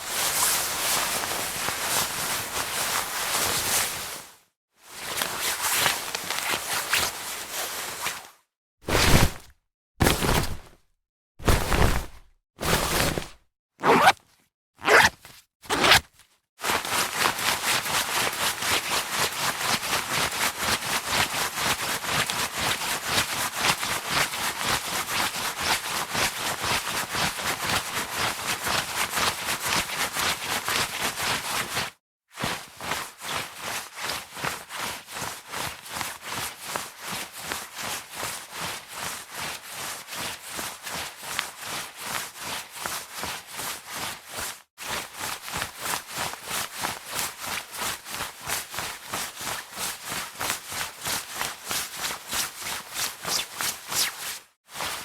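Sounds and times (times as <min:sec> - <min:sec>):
jacket fabric rustling: 0:08.9 - 0:10.8, 0:11.4 - 0:16.1.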